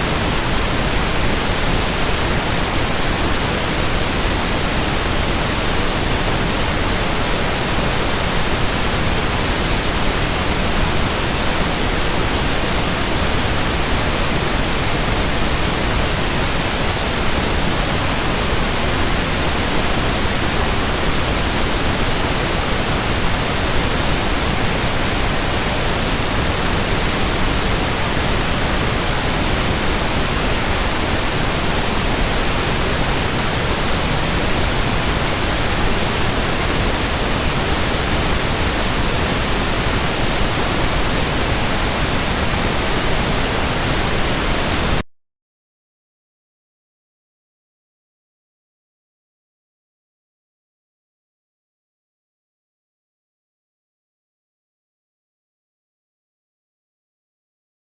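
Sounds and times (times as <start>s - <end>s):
pink noise hiss: 0.0s - 45.0s.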